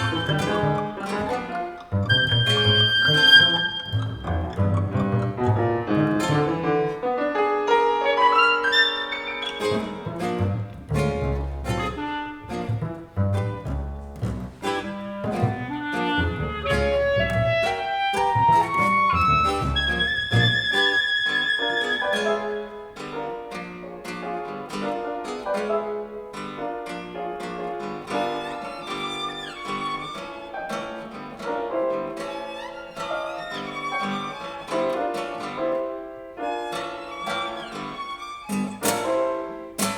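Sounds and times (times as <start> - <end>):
low double bass notes: 0.0 - 6.8, 9.7 - 20.7
chamber ensemble playing: 0.0 - 22.9.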